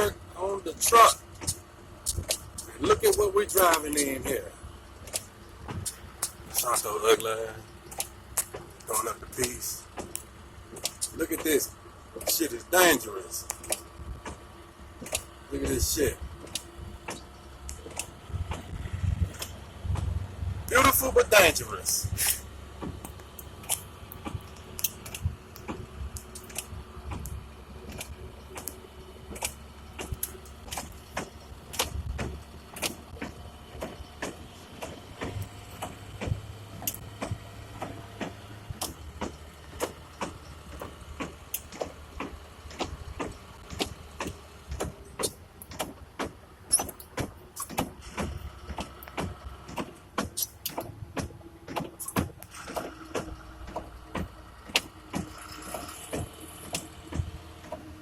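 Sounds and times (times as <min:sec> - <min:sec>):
clicks and rattles in cab: 0:00.0 - 0:04.4, 0:05.0 - 0:14.4, 0:15.0 - 0:20.1, 0:20.7 - 0:58.0
truck engine rumble: 0:00.0 - 0:58.0.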